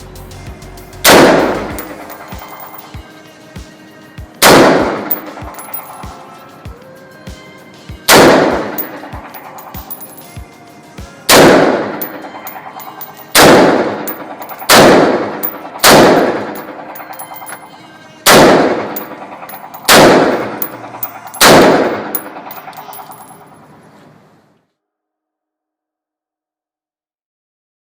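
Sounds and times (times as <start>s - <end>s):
gunshots with echo: 1.1s - 2.8s, 4.4s - 6.2s, 8.1s - 10.2s, 11.3s - 17.7s, 18.3s - 23.5s.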